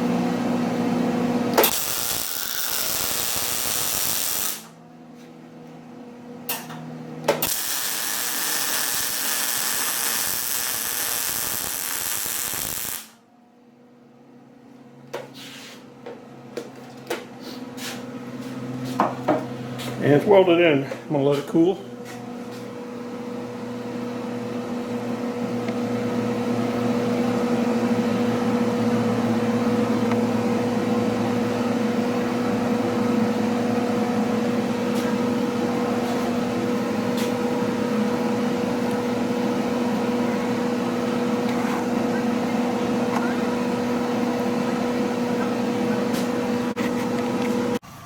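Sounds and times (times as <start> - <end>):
electric motor humming: 1.6 - 4.7, 7.4 - 13.1.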